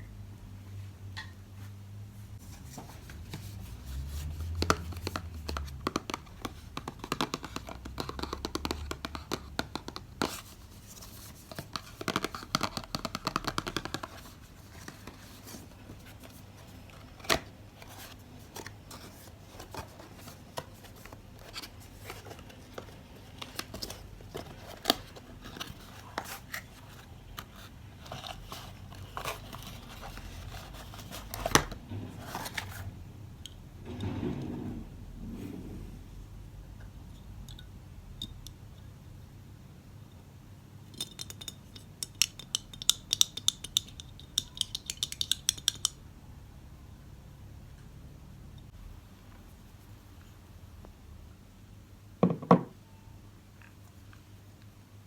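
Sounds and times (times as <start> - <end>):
rustling and crinkling: 1.5 - 9.3, 10.2 - 33.0.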